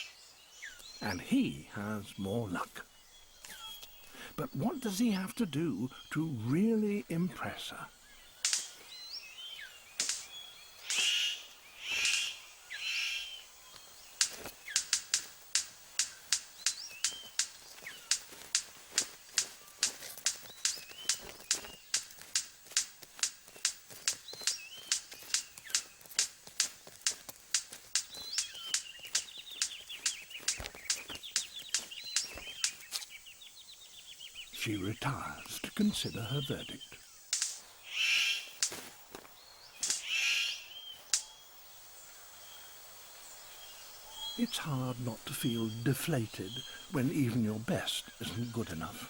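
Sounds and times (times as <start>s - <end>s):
bird harsh rasping calls: 6.8s - 13.5s, 14.2s - 33.1s, 34.2s - 38.8s, 39.7s - 41.3s
bird thin chirps: 8.1s - 15.3s, 15.9s - 26.3s, 27.9s - 33.2s
bird sharp clicks: 8.1s - 33.2s, 37.3s - 41.4s.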